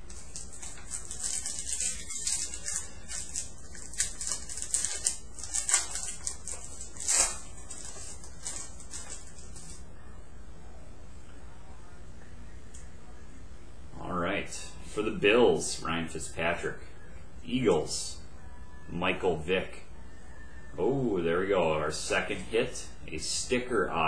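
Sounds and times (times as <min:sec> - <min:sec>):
card pack crinkling rustle: 0:00.0 - 0:09.8.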